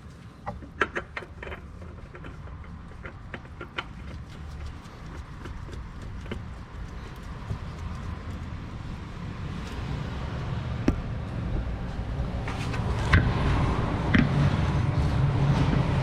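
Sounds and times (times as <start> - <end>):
oil filter clicking and knocking: 0.4 - 10.2, 10.8 - 11.1.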